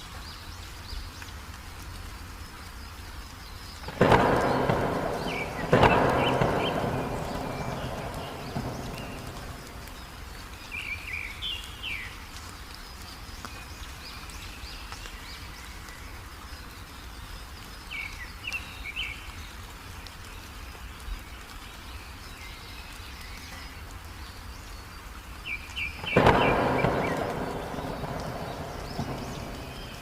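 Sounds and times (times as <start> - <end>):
heavy rain: 0.0 - 30.0
small birds chirping: 0.0 - 30.0
loud crash: 4.0 - 10.3, 26.2 - 30.0.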